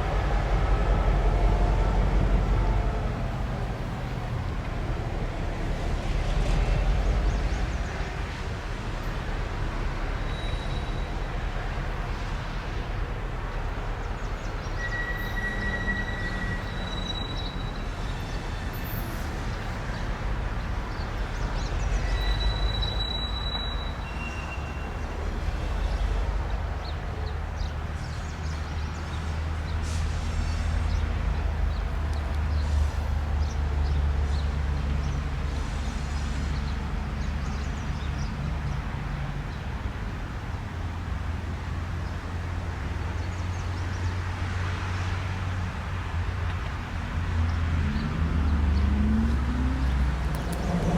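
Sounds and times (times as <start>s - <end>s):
locomotive engine drone: 0.0s - 50.9s
train rolling noise: 0.0s - 50.9s
short high squeal: 10.2s - 11.2s, 14.8s - 18.6s, 22.0s - 25.0s.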